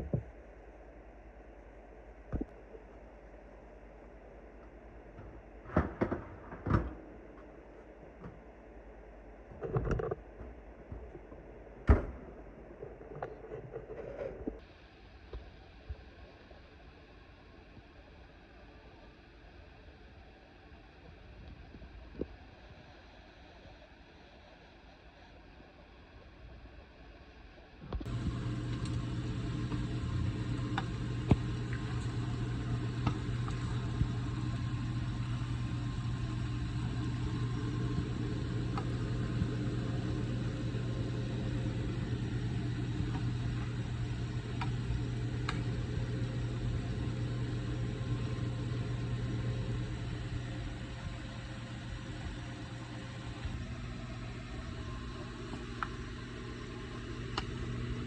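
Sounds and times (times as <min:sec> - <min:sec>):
kitchen appliance humming: 0:28.0 - 0:58.0.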